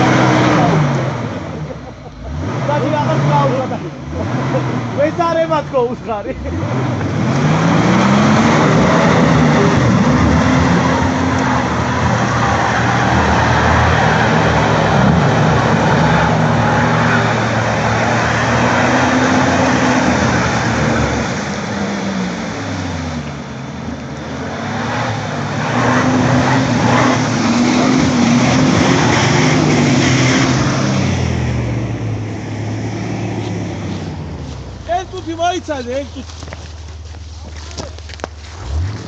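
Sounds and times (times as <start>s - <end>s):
engine revving: 0.0s - 36.2s, 38.4s - 39.0s.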